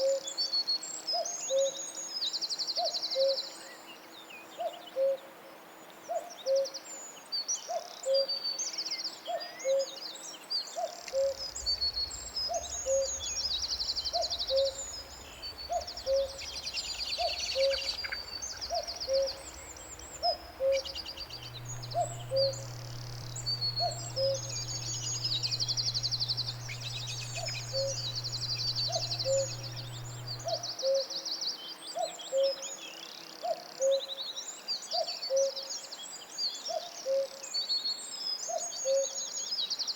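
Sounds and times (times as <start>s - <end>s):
birds trilling and chirping: 11.2s - 30.7s
low steady hum: 11.3s - 30.6s
two-note hooting bird call: 20.2s - 30.6s.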